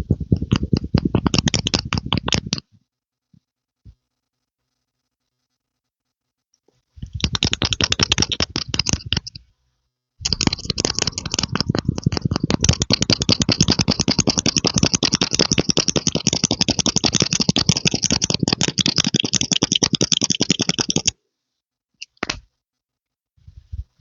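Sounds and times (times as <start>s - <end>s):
rapid even clicking: 0.0s - 2.6s, 7.0s - 9.4s, 10.2s - 21.2s.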